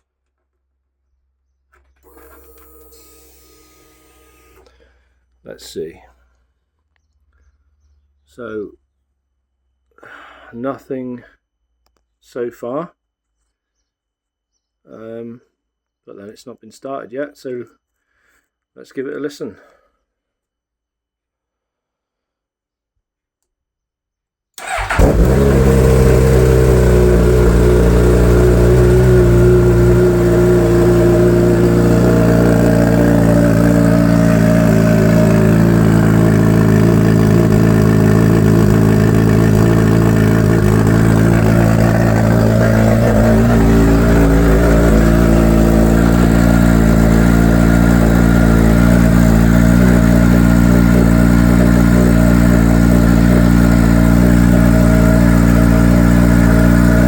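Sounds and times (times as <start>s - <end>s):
motorcycle engine starting and idling: 24.6s - 57.0s.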